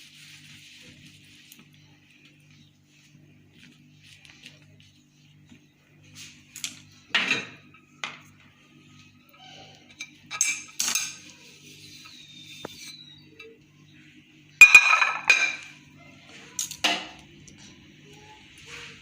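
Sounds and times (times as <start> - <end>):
dishes and utensils clattering: 6.6 - 8.3, 9.6 - 11.4, 14.6 - 15.8.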